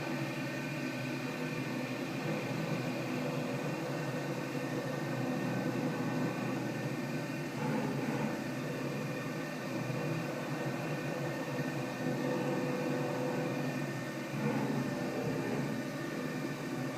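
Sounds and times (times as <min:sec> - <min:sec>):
machining center mechanical hum: 0:00.0 - 0:16.9.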